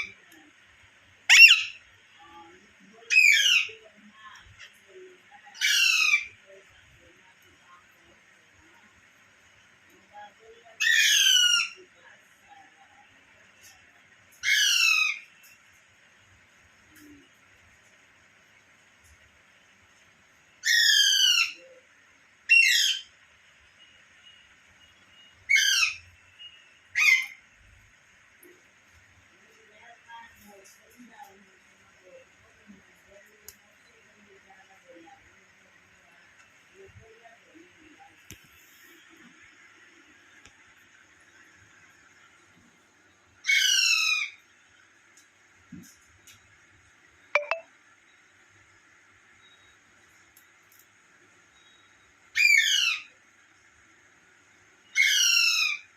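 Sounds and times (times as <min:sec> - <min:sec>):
parrot harsh calls: 0:01.3 - 0:01.8, 0:03.1 - 0:03.8, 0:10.8 - 0:11.8, 0:14.4 - 0:15.3, 0:20.6 - 0:21.6, 0:22.5 - 0:23.1, 0:25.5 - 0:26.0, 0:26.9 - 0:27.4, 0:43.4 - 0:44.4, 0:52.3 - 0:53.1, 0:54.9 - 0:55.9.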